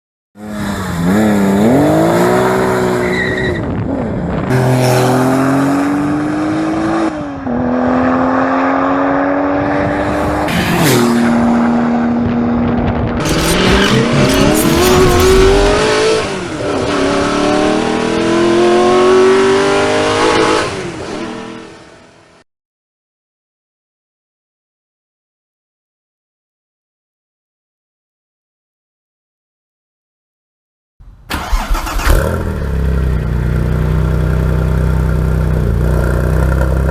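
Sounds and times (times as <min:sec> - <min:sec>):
car engine accelerating hard: 0:04.6 - 0:21.8.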